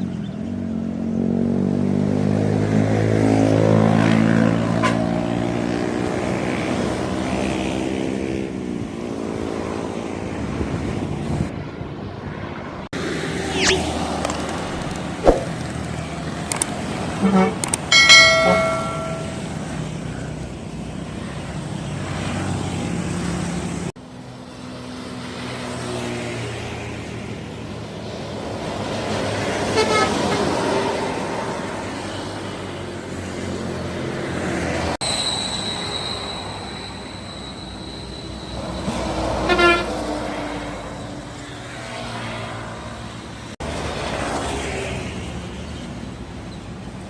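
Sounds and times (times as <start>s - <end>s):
road traffic noise: 0.0s - 47.0s
multi-tone bus horn: 4.6s - 5.3s, 17.1s - 17.8s, 29.6s - 30.8s, 39.3s - 40.2s.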